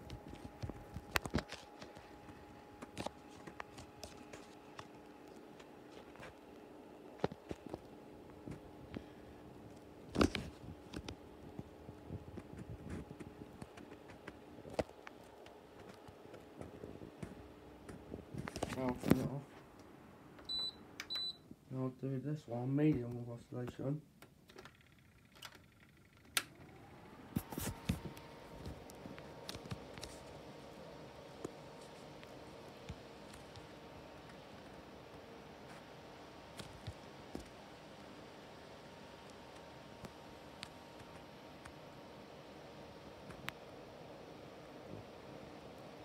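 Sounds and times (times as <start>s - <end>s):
fan motor hum: 0.0s - 46.0s
fan motor whirring: 24.5s - 46.0s.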